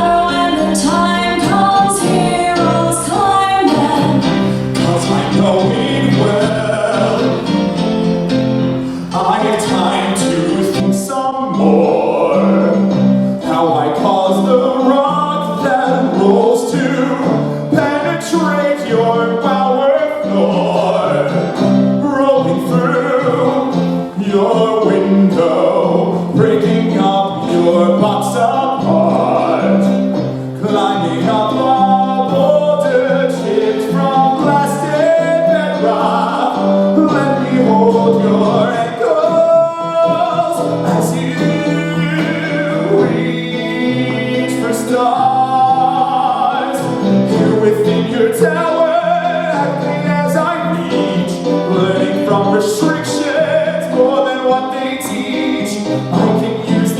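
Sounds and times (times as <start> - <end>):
sustained low chords: 0.0 - 10.6
singing over instrumental music: 0.0 - 56.9.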